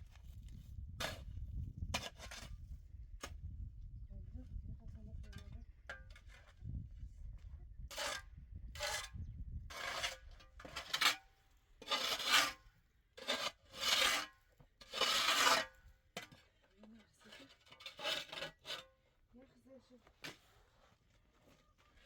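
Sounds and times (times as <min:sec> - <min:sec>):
rough scraping strokes: 0:07.9 - 0:11.2, 0:11.8 - 0:15.8, 0:17.1 - 0:18.9.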